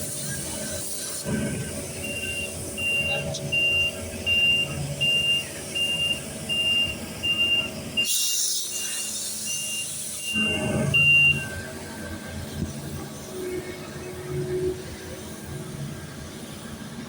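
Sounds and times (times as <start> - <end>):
backup alarm beeping: 1.9 - 8.1, 8.8 - 11.7.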